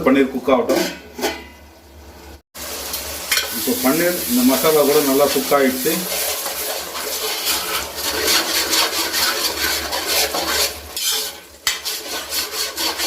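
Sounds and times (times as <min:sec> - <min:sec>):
spoon stirring and scraping pan: 0:00.7 - 0:01.6, 0:03.2 - 0:03.8, 0:04.4 - 0:13.0.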